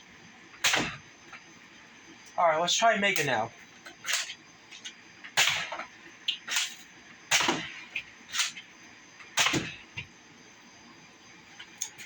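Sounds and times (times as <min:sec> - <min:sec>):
toy blaster firing shots: 0:00.6 - 0:01.0, 0:05.4 - 0:05.8, 0:06.5 - 0:07.8.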